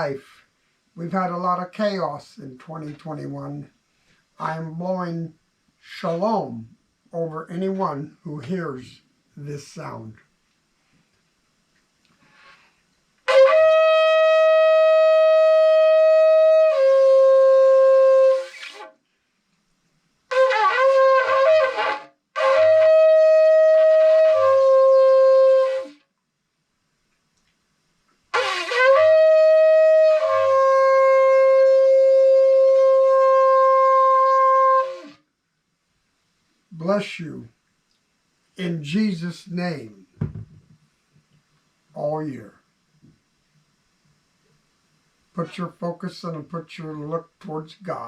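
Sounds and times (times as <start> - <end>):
shofar blasts: 13.2 - 19.0, 20.3 - 26.0, 28.3 - 35.2.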